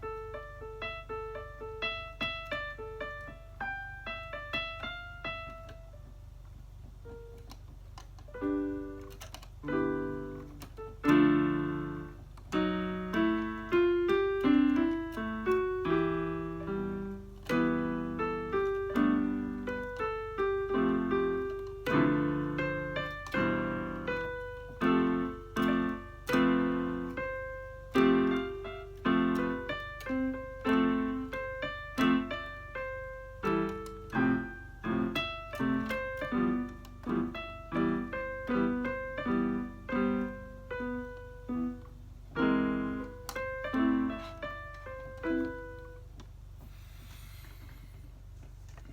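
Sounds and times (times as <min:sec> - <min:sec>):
electronic keyboard chords and notes: 0:00.0 - 0:06.2, 0:07.0 - 0:46.2
steady low hum: 0:36.5 - 0:48.9.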